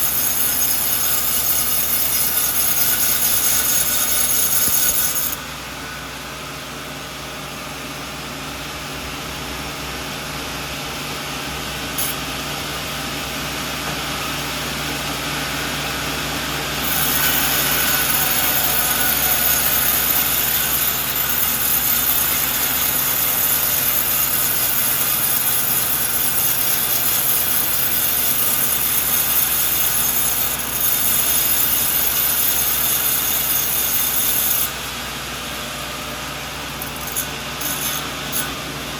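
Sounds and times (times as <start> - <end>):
saw cutting log: 0.0 - 5.4, 16.8 - 35.0, 36.7 - 38.8
sawmill engine drone: 0.0 - 38.9.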